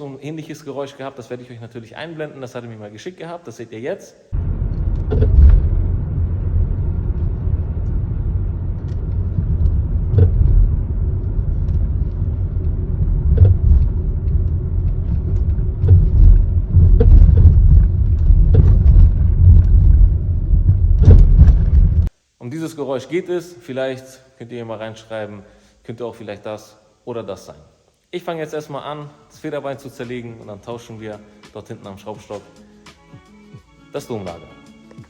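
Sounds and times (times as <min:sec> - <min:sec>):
suspension rattles and knocks: 0:04.4 - 0:08.0, 0:08.8 - 0:22.1
car road rumble: 0:04.4 - 0:22.1.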